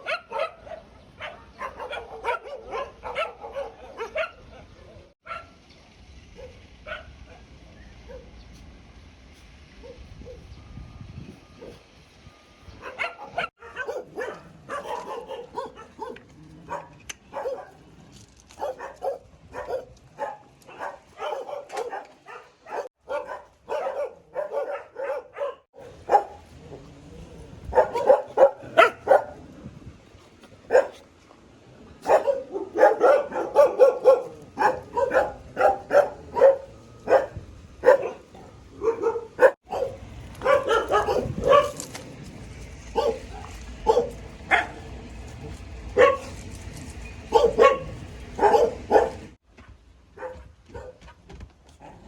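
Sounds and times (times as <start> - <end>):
dogs barking: 0.0 - 5.6, 12.8 - 17.9, 18.6 - 26.9, 27.6 - 29.4, 30.6 - 31.0, 32.0 - 41.9, 42.9 - 45.0, 45.9 - 46.4, 47.2 - 49.4, 50.2 - 51.0.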